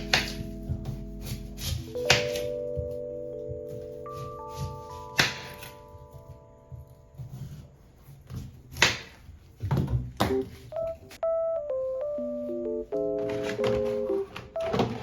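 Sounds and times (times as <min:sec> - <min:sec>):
soft keyboard music: 0:00.0 - 0:08.2, 0:10.2 - 0:15.0
household knocks and clatters: 0:08.2 - 0:10.5.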